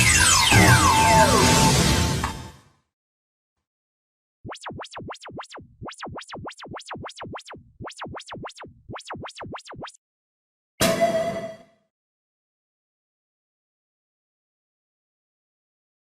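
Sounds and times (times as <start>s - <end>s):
electronic tone sweeping up and down: 0.0s - 2.0s, 4.5s - 10.0s.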